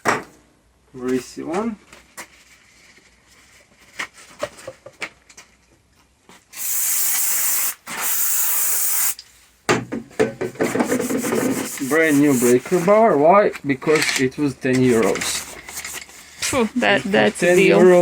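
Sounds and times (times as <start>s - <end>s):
aerosol spray can bursts: 6.5s - 9.2s.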